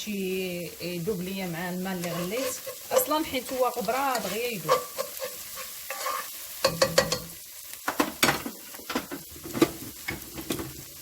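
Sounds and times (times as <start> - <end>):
food sizzling in oil: 0.0 - 11.0
spoon clinking against pot: 4.1 - 7.3.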